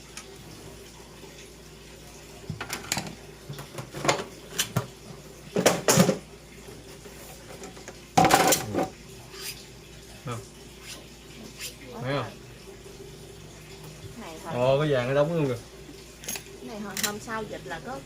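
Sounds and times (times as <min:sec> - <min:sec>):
hard parts clattering and knocking: 0:08.2 - 0:08.9.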